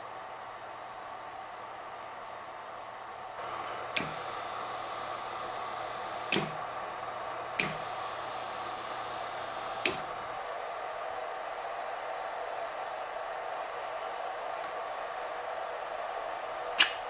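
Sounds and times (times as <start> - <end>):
steady hum: 0.0 - 17.0
faint high whine: 3.4 - 10.8
sharp clicks: 6.3 - 6.5, 7.6 - 7.8, 16.8 - 17.0.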